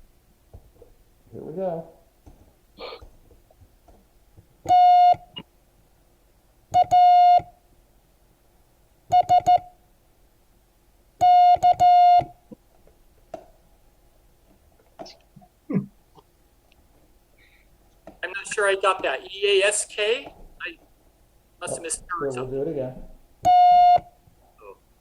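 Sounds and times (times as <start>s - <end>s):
morse code tone: 4.7s - 5.4s, 6.8s - 7.5s, 11.2s - 12.4s, 23.5s - 24.1s.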